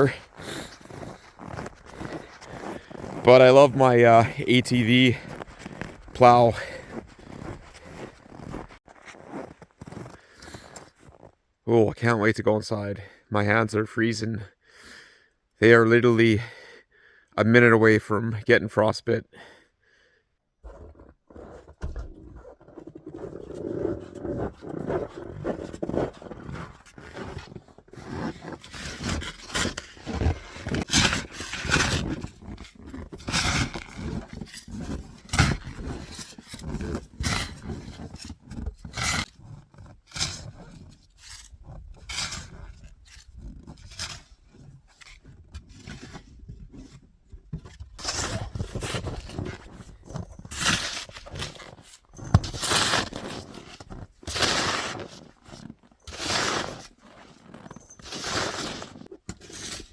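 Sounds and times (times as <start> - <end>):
footsteps crunching in snow: 0.0 - 11.4, 48.0 - 59.9.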